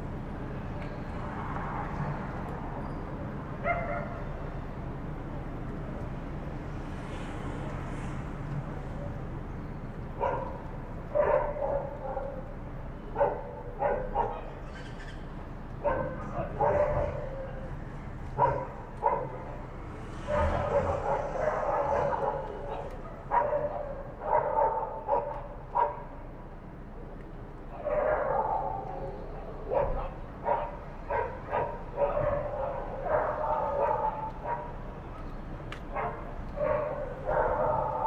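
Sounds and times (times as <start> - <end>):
dogs barking: 3.6 - 4.3, 10.2 - 12.5, 13.1 - 14.6, 15.8 - 17.7, 18.3 - 26.2, 27.7 - 35.2, 35.9 - 38.0
dog drawn-out calling: 35.9 - 38.0.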